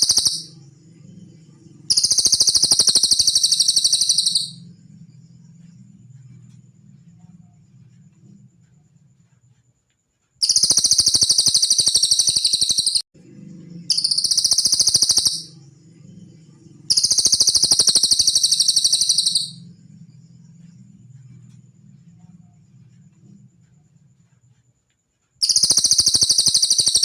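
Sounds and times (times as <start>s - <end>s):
rapid high bird trills: 0.0s - 0.6s
low hum: 0.0s - 9.4s, 13.2s - 24.4s
faint high whine: 0.0s - 9.7s, 10.4s - 25.0s.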